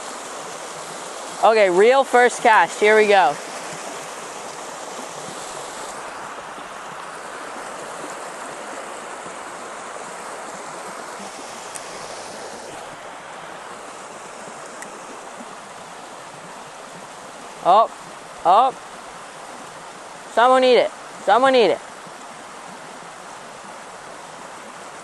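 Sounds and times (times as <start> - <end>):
creek water flowing: 0.0 - 25.0
faint ticks: 14.8 - 15.0.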